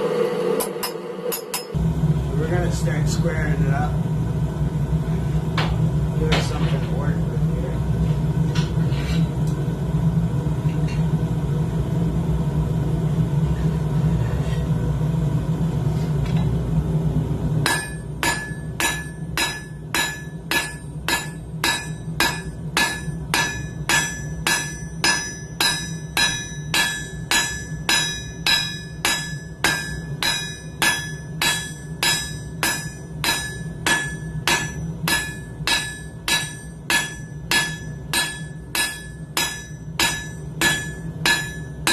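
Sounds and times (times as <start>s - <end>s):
hammer ringing on anvil: 0.6s - 1.8s, 17.6s - 41.9s.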